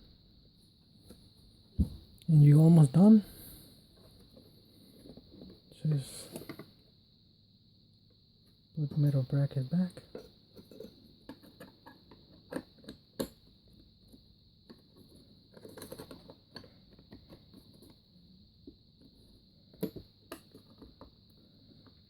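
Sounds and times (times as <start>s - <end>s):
faint high-pitched hiss: 0.0s - 22.0s
clicks and knocks of parts handled: 14.1s - 18.0s.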